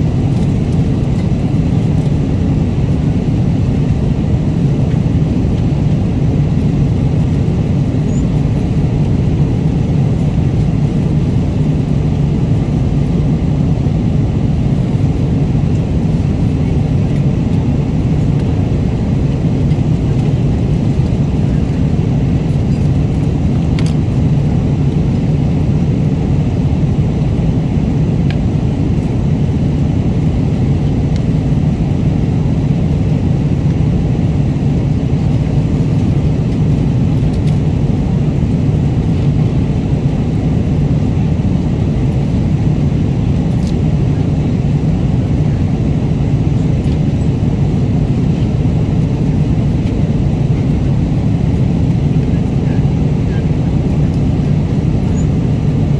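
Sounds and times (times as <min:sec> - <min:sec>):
airliner cabin engine rush: 0:00.0 - 0:55.9
faint small clicks: 0:23.8 - 0:24.0, 0:37.2 - 0:37.6, 0:43.5 - 0:43.8.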